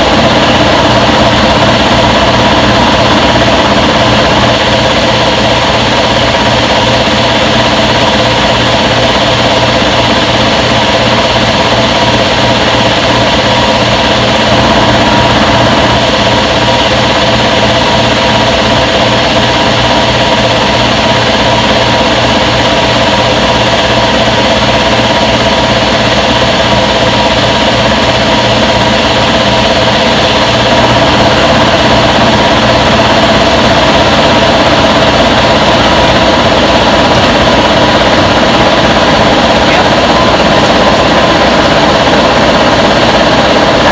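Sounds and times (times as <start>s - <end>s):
washing machine motor whir: 0.0s - 43.9s.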